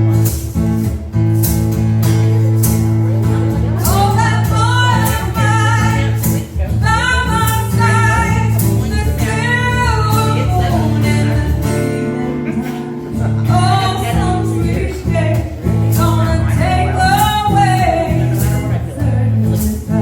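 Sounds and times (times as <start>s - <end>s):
acoustic guitar: 0.0s - 20.0s
person singing: 7.0s - 20.0s.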